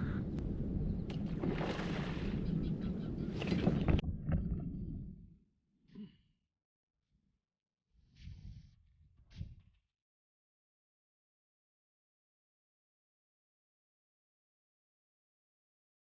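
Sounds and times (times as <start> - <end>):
wind rumbling on microphone: 0.0 - 5.4, 8.0 - 9.8.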